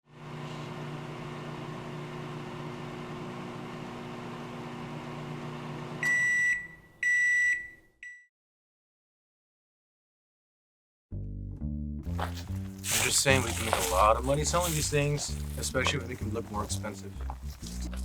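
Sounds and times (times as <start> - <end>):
microwave oven hum: 0.1 - 7.5
microwave beeps: 5.9 - 8.3.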